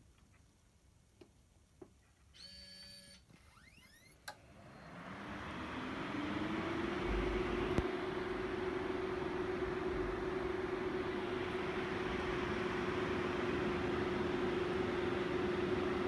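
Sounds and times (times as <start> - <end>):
projector cooling fan whirring: 3.6 - 16.0.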